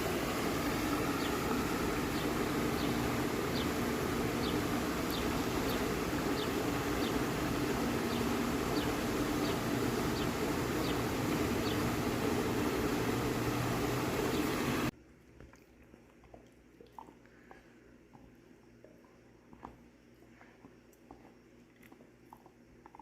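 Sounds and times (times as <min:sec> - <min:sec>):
steady low rumble: 0:00.0 - 0:14.9.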